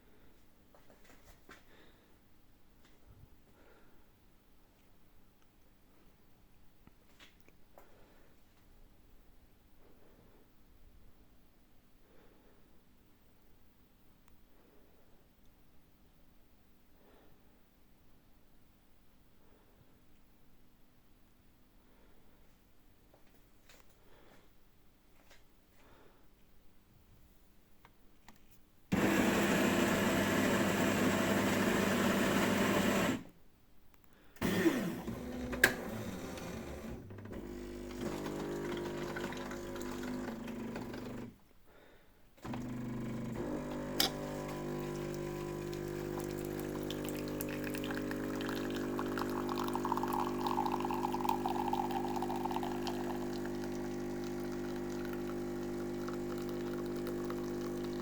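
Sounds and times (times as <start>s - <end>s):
coffee grinder running: 28.9s - 33.3s, 34.4s - 41.3s, 42.4s - 58.0s
coffee machine pump humming: 28.9s - 33.3s, 34.4s - 41.4s, 42.4s - 58.0s.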